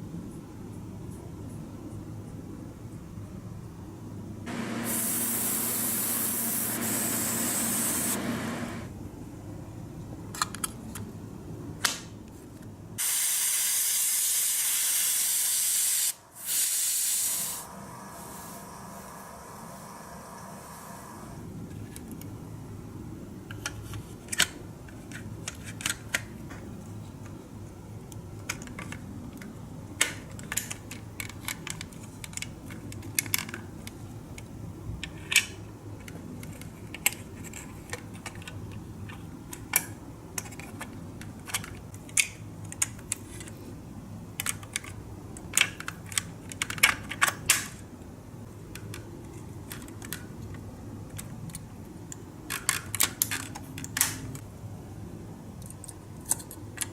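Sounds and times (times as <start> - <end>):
steady low hum: 0.0 - 13.0, 17.6 - 45.5.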